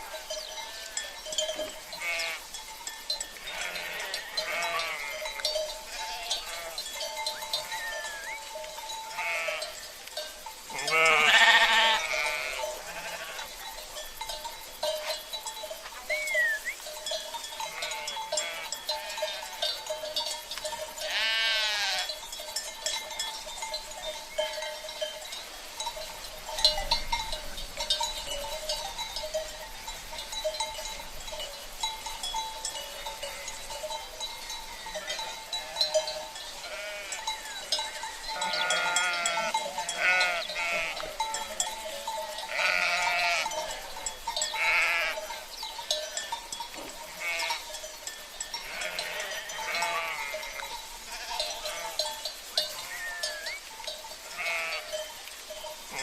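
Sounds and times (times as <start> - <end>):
sheep bells clanking: 0.0 - 56.0
sheep bleating: 1.9 - 2.4, 3.4 - 5.3, 5.9 - 6.9, 7.6 - 8.4, 9.0 - 9.8, 10.7 - 13.5, 17.6 - 19.7, 21.0 - 22.1, 36.6 - 37.3, 38.4 - 41.2, 42.5 - 43.8, 44.6 - 45.2, 47.1 - 47.6, 48.6 - 52.0, 52.8 - 53.6, 54.3 - 55.0.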